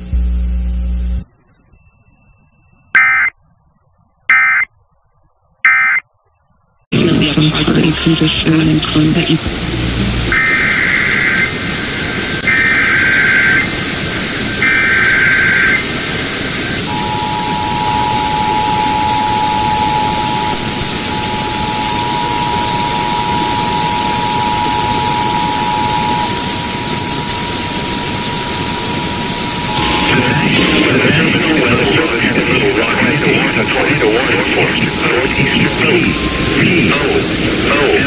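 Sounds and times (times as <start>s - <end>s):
radio static: 0.0s - 1.2s, 3.0s - 3.3s, 6.9s - 38.0s
screeching data bursts: 1.4s - 6.8s, 9.4s - 38.0s
two-tone attention signal: 1.7s - 3.3s, 4.3s - 4.7s, 5.7s - 6.0s, 16.9s - 28.3s, 29.0s - 37.1s.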